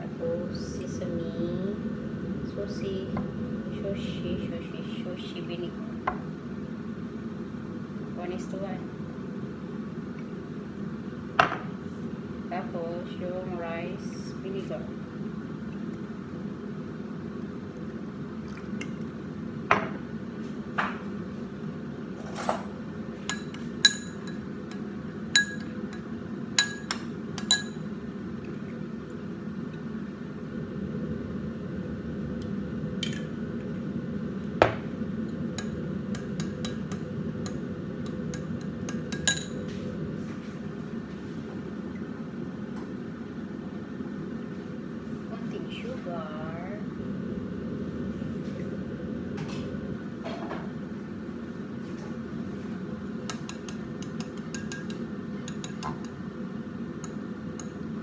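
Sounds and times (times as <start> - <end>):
steady low hum: 0.0 - 58.0
utensils clinking against glass dishes: 22.2 - 24.4.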